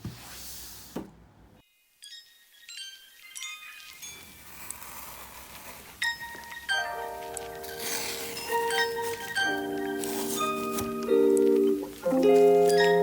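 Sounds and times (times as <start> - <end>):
chime-like mallet percussion music: 2.0 - 4.3.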